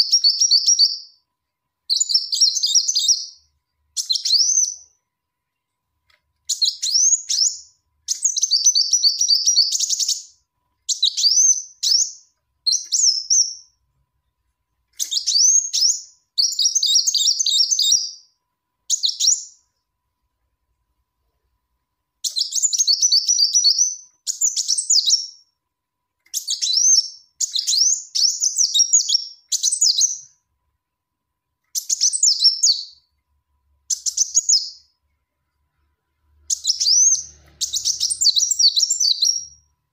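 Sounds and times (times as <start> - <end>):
sunbird chirping and twittering: 0.0 - 1.2, 1.9 - 5.0, 6.5 - 13.8, 14.9 - 18.3, 18.9 - 19.7, 22.2 - 25.4, 26.3 - 30.4, 31.7 - 33.1, 33.9 - 35.0, 36.4 - 39.7.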